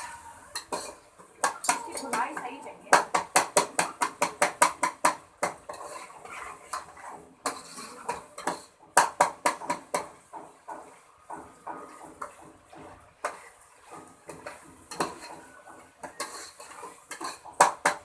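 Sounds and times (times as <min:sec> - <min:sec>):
utensil scraping cooking pot: 0:00.0 - 0:18.0.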